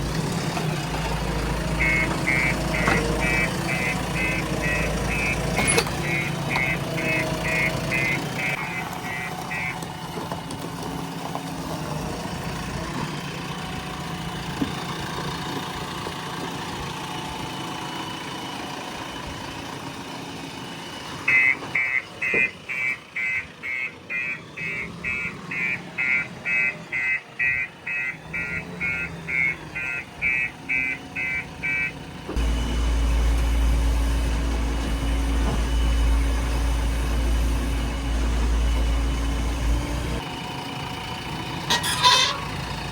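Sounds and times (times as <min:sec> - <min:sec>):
loud low engine drone: 0:00.0 - 0:14.8, 0:31.0 - 0:42.9
diesel engine running: 0:00.0 - 0:42.9
reversing alarm beeping: 0:01.8 - 0:09.8, 0:21.2 - 0:32.0.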